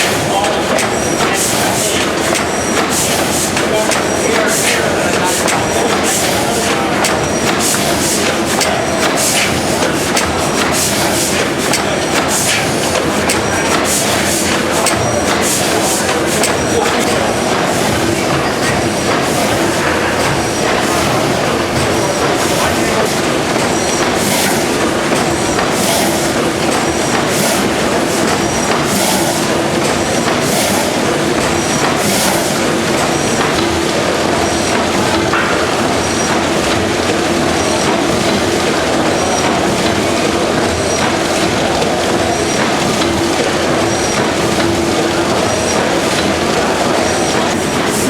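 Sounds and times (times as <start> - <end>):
rhythmic hiss: 0.0 - 36.5
gas engine beating slowly: 0.1 - 38.0.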